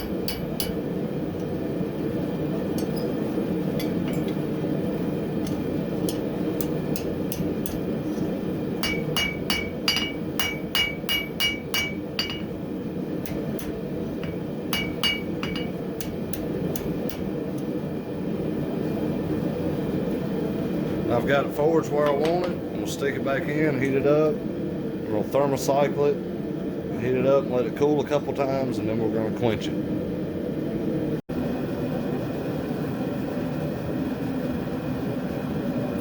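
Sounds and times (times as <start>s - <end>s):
hammer ringing on anvil: 0.0s - 0.8s, 2.8s - 3.2s, 8.8s - 12.6s, 13.3s - 17.3s.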